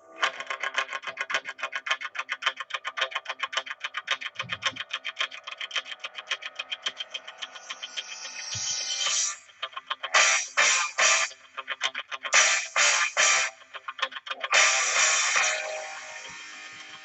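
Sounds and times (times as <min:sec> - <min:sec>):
electronic music: 0:04.3 - 0:17.0.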